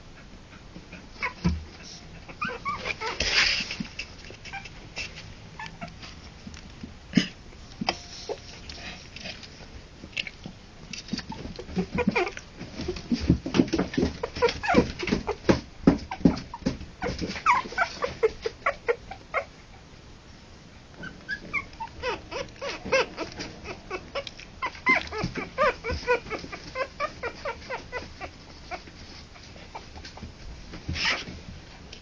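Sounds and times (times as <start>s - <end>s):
puppies whimpering and yipping: 0.9s - 3.7s, 4.3s - 6.2s, 11.2s - 19.8s, 21.0s - 31.4s.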